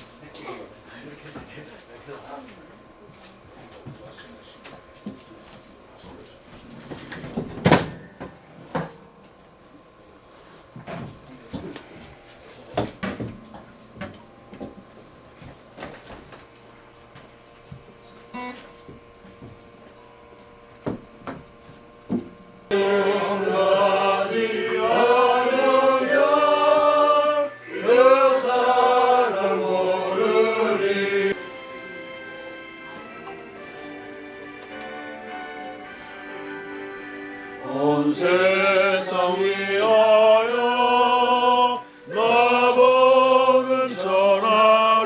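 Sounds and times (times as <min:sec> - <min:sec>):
hymn music: 0:22.7 - 0:45.0.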